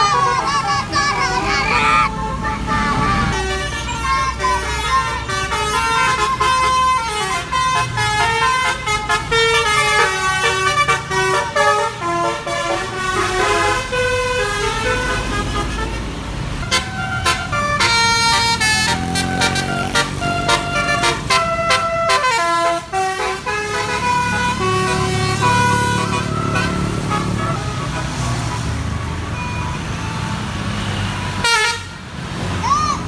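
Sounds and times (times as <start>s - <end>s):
bus multi-tone horn tune: 0.0s - 32.3s
bus engine rumble: 0.0s - 33.0s.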